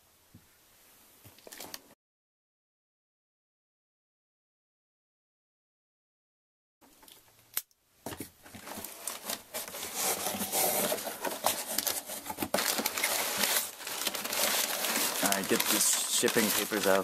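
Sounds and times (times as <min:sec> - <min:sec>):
packaging tearing and crinkling: 0:08.6 - 0:17.0.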